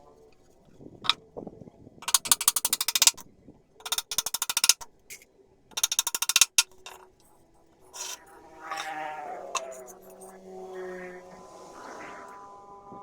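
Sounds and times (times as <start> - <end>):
rapid mechanical clicking: 2.0 - 3.2, 3.8 - 7.0.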